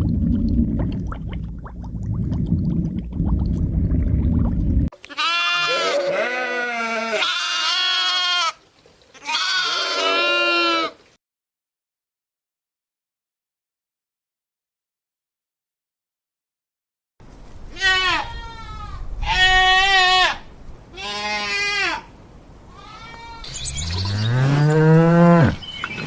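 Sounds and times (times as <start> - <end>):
low rumbling noise: 0.0 - 4.9
sheep or goat bleating: 5.0 - 8.6, 9.2 - 11.0.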